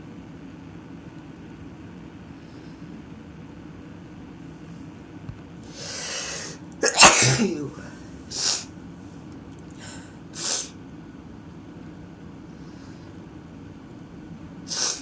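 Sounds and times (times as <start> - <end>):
short breathy sounds: 5.7 - 8.6
person sneezing: 5.8 - 8.7, 14.7 - 15.0.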